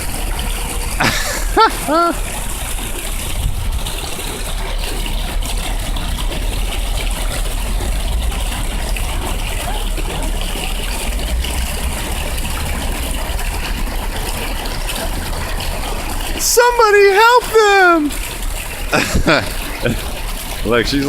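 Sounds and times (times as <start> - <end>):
fountain water splashing: 0.0 - 21.0
low rumble: 5.0 - 16.3.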